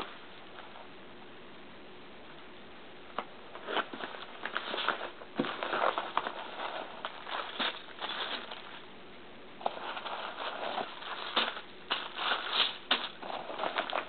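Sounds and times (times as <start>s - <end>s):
package crinkling and rustling: 3.6s - 8.8s.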